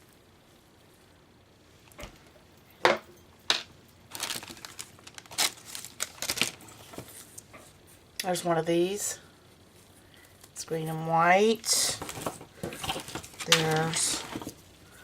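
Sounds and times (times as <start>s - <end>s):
plastic packaging crinkling: 4.1s - 7.4s, 11.8s - 14.8s.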